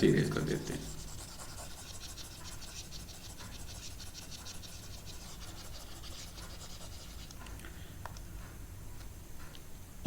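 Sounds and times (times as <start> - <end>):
eraser rubbing on paper: 0.2 - 7.4.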